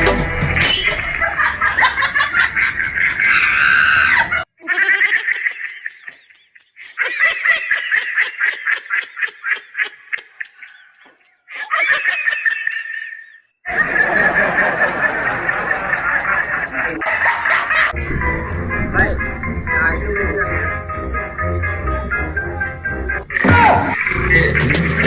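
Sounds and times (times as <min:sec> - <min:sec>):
music: 0:00.0 - 0:00.6, 0:18.0 - 0:25.0.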